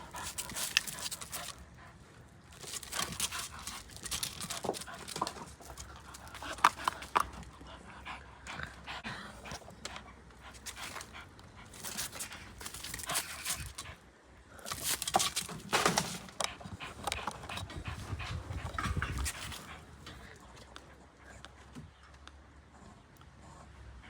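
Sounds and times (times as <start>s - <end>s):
dog scuffling about: 0.0s - 1.8s, 2.5s - 7.5s, 10.4s - 14.0s, 14.6s - 20.1s
dog panting: 0.0s - 14.0s, 14.6s - 21.8s
rustling: 2.5s - 7.2s.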